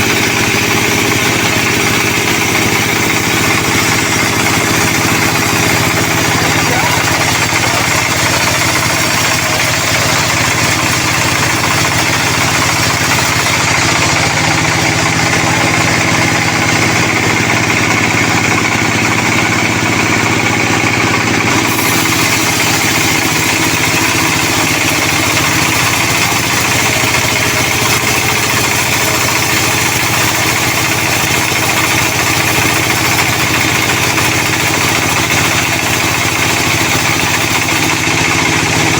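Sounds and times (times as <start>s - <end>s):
log saw machinery drone: 0.0s - 38.9s.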